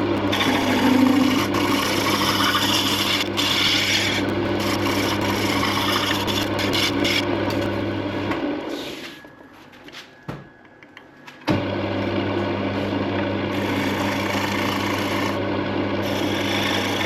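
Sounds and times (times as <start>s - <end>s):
tool rasping on spinning wood: 0.0s - 8.0s, 13.5s - 15.4s, 16.0s - 17.0s
wood lathe motor hum: 0.0s - 9.4s, 11.4s - 17.0s.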